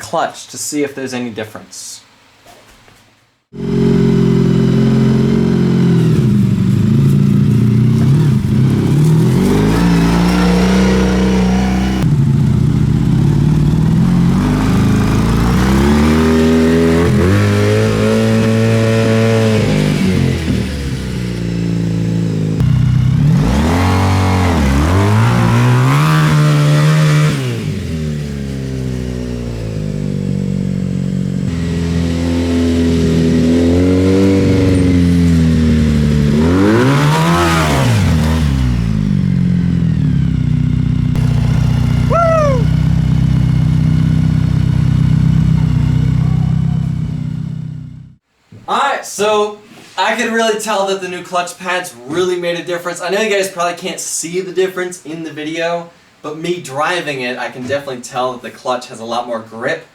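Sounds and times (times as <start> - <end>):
motorcycle engine revving: 3.5 - 48.2.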